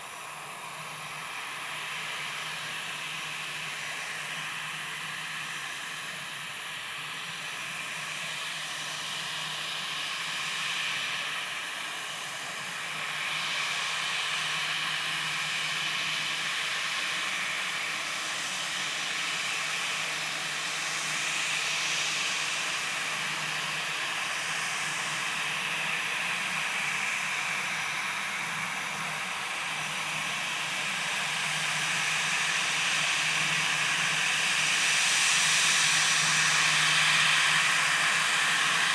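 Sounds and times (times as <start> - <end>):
jet engines taxiing: 11.2 - 38.9.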